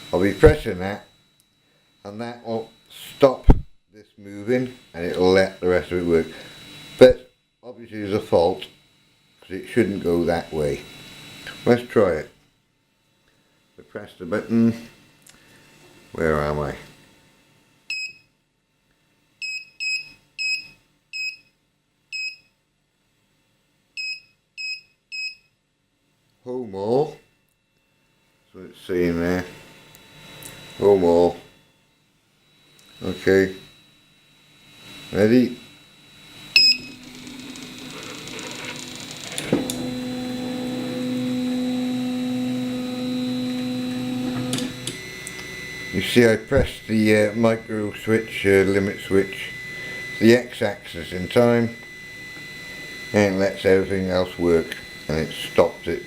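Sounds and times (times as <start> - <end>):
stepper motors whining: 36.2 - 56.0
short electronic beeps: 36.6 - 37.0.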